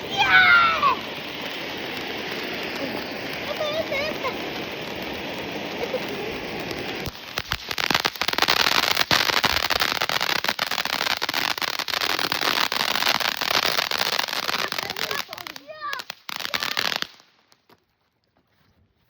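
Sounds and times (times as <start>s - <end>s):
fireworks hissing: 0.0s - 17.5s
fireworks crackling pops: 0.0s - 17.8s.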